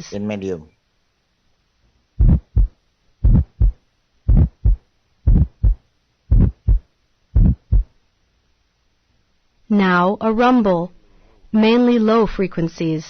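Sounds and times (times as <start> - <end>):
harsh heart murmur: 2.2 - 7.9
heartbeat through stethoscope: 2.2 - 7.9.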